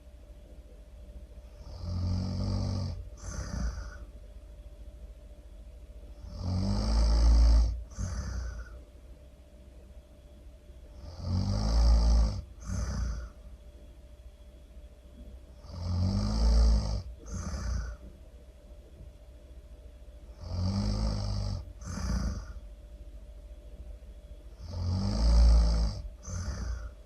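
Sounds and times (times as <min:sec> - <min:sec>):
loud snoring: 0:01.5 - 0:04.1, 0:06.2 - 0:08.8, 0:11.0 - 0:13.4, 0:15.6 - 0:18.1, 0:20.3 - 0:22.6, 0:24.6 - 0:27.0
soft breath: 0:01.5 - 0:04.3, 0:07.7 - 0:09.0, 0:12.4 - 0:13.6, 0:16.7 - 0:18.3, 0:21.2 - 0:22.9, 0:25.9 - 0:27.0.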